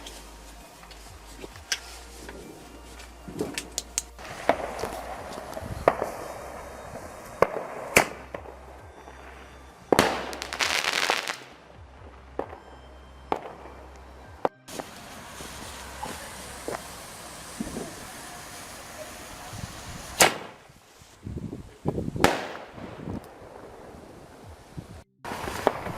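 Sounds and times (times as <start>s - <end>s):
fireworks crackling: 0.0s - 12.6s, 14.7s - 25.9s
fireworks bangs and pops: 3.3s - 12.6s, 14.4s - 21.2s, 22.1s - 23.8s, 24.5s - 25.9s.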